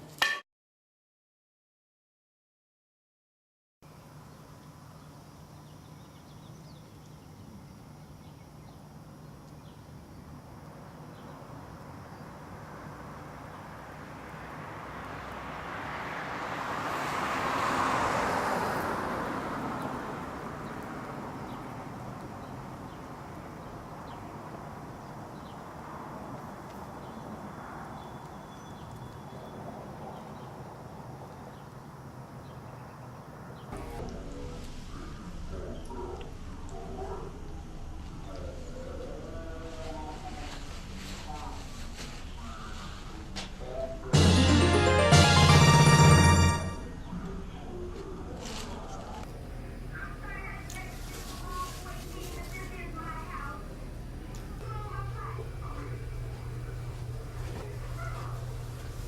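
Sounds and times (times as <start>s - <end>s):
vehicle passing by: 12.7s - 23.4s.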